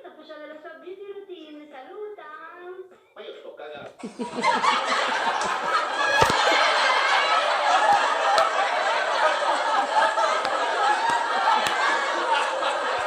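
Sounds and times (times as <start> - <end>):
crowd laughing: 4.0 - 13.0.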